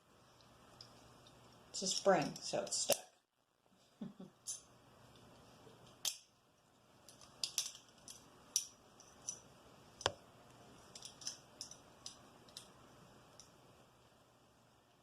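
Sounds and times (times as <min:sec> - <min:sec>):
small metallic clicks and scrapes: 0:07.0 - 0:10.2, 0:10.8 - 0:12.7.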